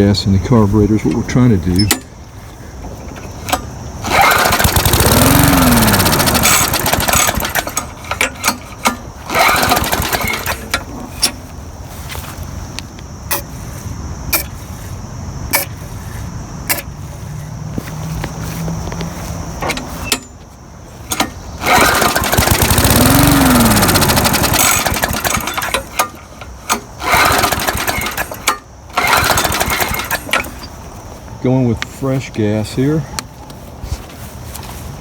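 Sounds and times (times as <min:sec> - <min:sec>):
small gas engine running rough: 0:04.0 - 0:08.6, 0:09.2 - 0:10.8, 0:21.5 - 0:26.2, 0:27.0 - 0:30.5.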